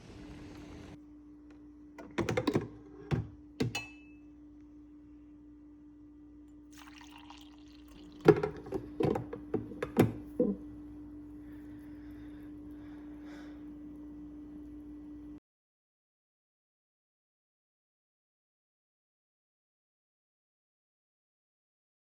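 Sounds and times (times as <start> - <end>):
liquid being poured: 6.7 - 8.9.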